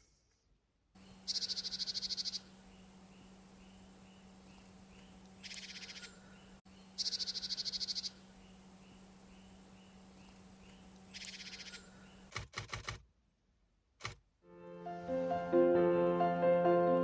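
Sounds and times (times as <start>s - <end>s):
steady low hum: 0.1s - 12.3s
small bird trilling: 1.1s - 2.5s, 3.2s - 6.2s, 6.8s - 12.0s.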